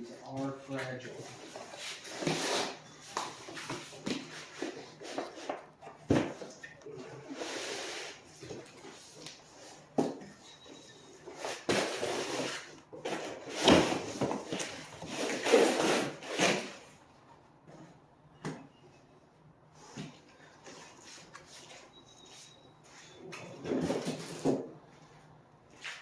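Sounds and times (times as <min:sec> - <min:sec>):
cardboard scraping and rustling: 0:11.2 - 0:17.0.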